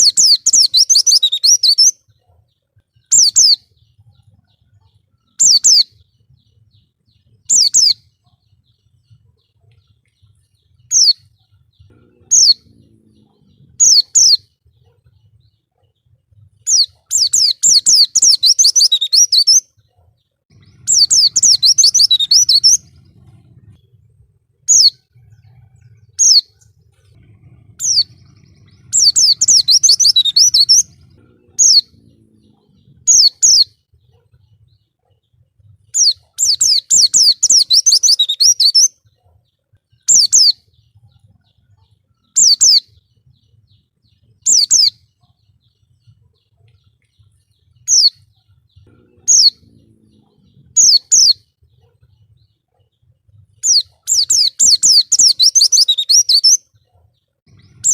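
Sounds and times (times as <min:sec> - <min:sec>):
bird chirping and twittering: 0:00.0 - 0:57.9.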